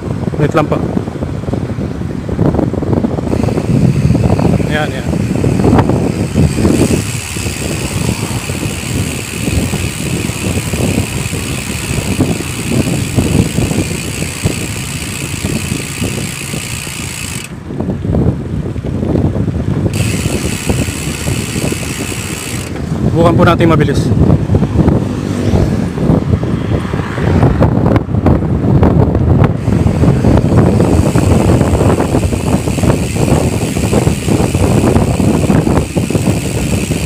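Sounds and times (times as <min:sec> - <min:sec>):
bicycle hub ratchet buzzing: 0:03.0 - 0:17.9, 0:19.6 - 0:24.9, 0:29.4 - 0:37.0.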